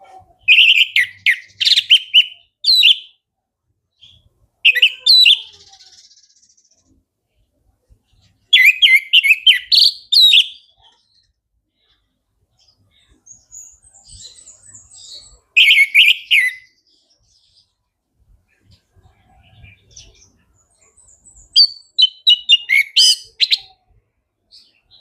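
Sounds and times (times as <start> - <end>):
high bird twittering: 0.4 - 3.2, 8.5 - 10.8, 13.3 - 16.8, 21.0 - 23.8
thrush whistled song: 0.5 - 3.2, 8.6 - 10.6, 15.6 - 16.8, 21.4 - 23.6.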